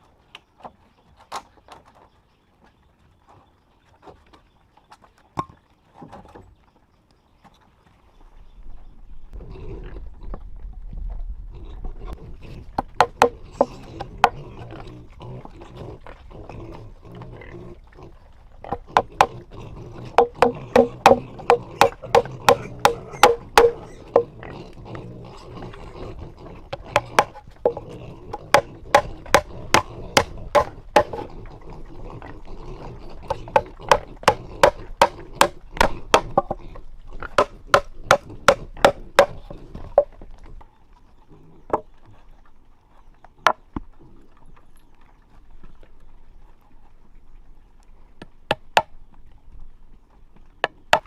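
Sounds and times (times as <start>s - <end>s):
chopping strikes on wood: 12.9s - 13.4s, 20.2s - 24.3s, 28.4s - 31.2s, 33.5s - 36.6s, 37.4s - 39.4s.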